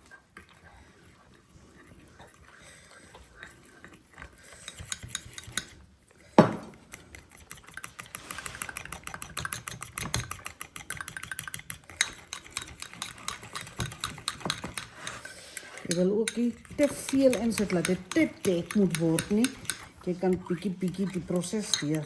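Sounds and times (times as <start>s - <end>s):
spoon stirring in pot: 3.1s - 22.0s
spoon clinking against pot: 4.6s - 5.8s, 9.3s - 22.0s
sharp knock: 6.4s - 6.8s.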